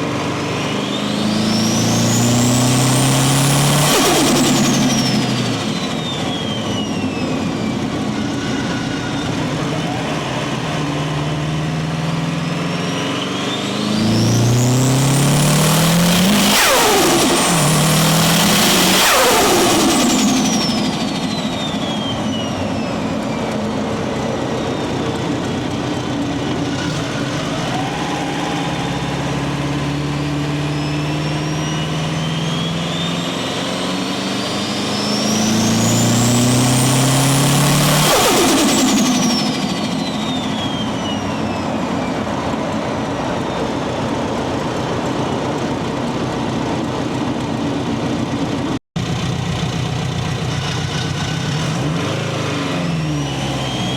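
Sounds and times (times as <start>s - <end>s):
car engine accelerating hard: 0.0s - 53.9s
turbo whistle: 0.6s - 11.5s, 12.5s - 42.6s, 50.5s - 53.9s
turbo flutter: 14.2s - 23.8s, 34.9s - 41.4s.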